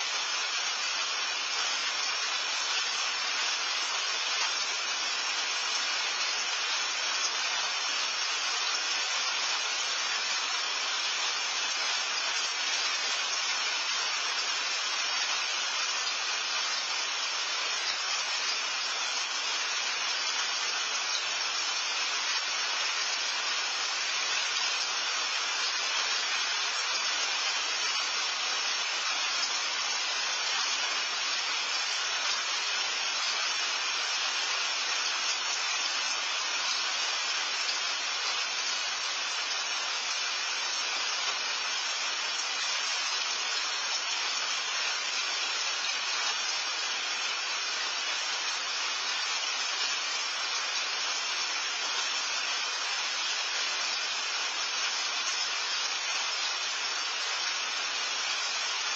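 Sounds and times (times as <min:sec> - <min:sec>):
steady rain falling: 0:00.0 - 0:58.9.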